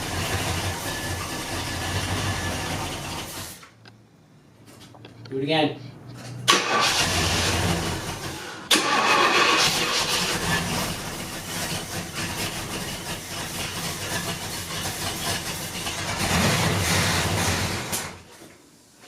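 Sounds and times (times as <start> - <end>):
car engine cranking on starter: 6.4 - 18.2.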